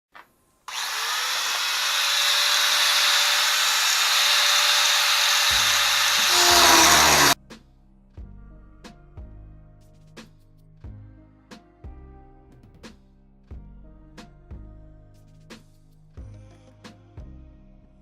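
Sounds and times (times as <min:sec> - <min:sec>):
power tool grinding: 0:00.7 - 0:07.4
music with deep bass: 0:13.5 - 0:18.0.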